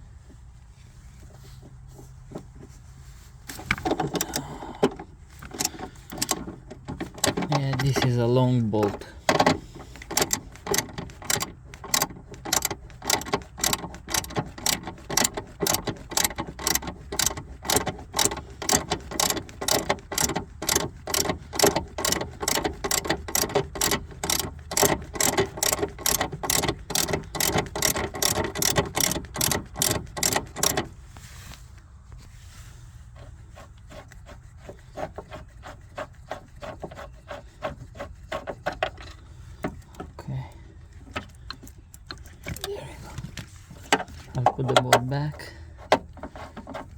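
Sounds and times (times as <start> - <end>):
ratchet wrench clicking: 5.4 - 8.2, 9.3 - 30.9.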